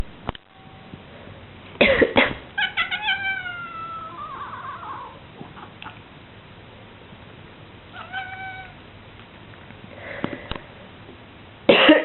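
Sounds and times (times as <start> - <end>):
harsh coughs: 1.8 - 2.4, 11.7 - 12.0
cat meowing: 2.6 - 5.7, 7.9 - 8.8.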